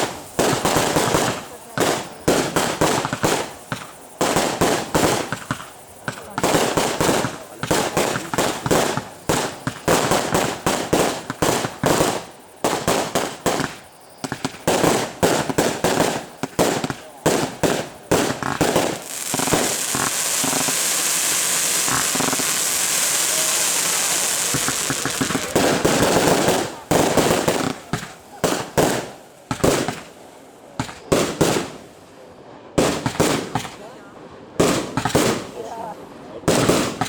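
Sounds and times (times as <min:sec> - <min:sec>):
fireworks high hiss: 0:00.0 - 0:32.2
fireworks bursts and bangs: 0:00.0 - 0:34.0, 0:34.6 - 0:37.0.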